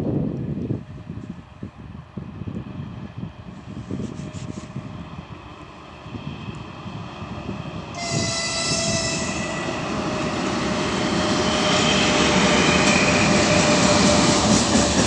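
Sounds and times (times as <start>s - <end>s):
electric locomotive running: 4.8s - 15.0s
train wheel clatter: 10.0s - 15.0s.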